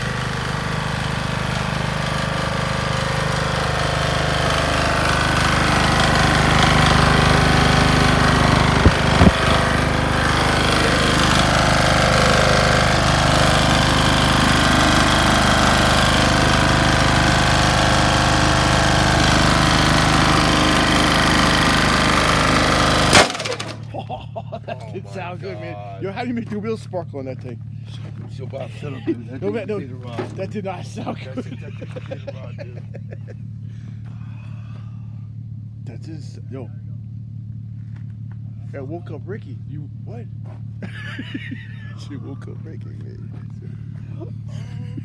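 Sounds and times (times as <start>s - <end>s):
engine revving with heavy knock: 0.0s - 24.1s, 29.4s - 32.2s
sharp engine bangs: 0.0s - 24.2s.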